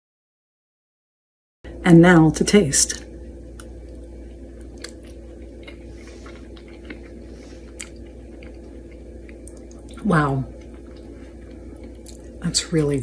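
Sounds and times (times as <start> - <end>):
steady low hum: 1.6 - 13.0
person chewing: 4.6 - 12.4.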